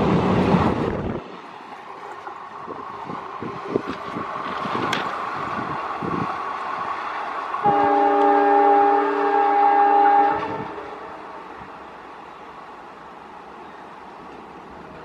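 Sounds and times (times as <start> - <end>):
train rumble and clatter: 0.0 - 15.0
locomotive horn blast: 7.6 - 11.2.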